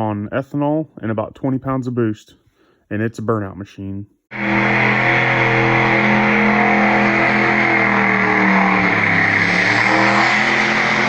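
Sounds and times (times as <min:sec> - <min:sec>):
truck engine running hard: 0:04.3 - 0:11.0.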